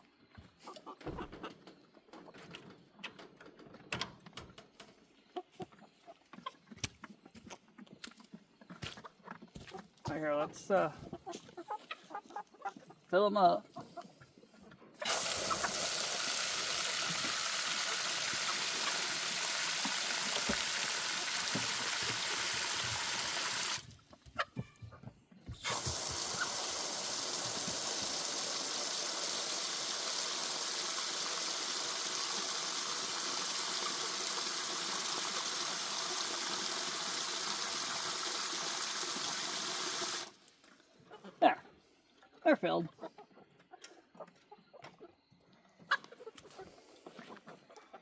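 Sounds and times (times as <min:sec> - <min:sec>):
water pouring into containers: 0:15.0 - 0:23.9, 0:25.6 - 0:40.5.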